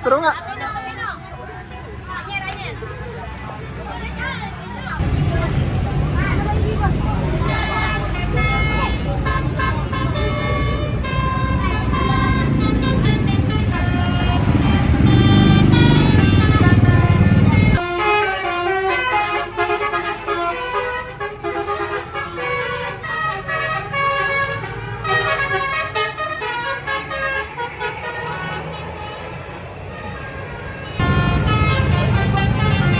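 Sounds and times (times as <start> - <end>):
bus engine rumble: 0.0 - 32.9
multi-tone bus horn melody: 6.0 - 32.9.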